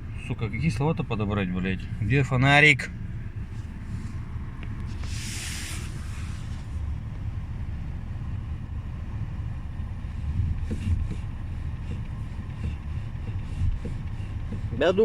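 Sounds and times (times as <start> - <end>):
car engine low rumble: 0.0 - 15.0
brief hiss: 4.9 - 6.8.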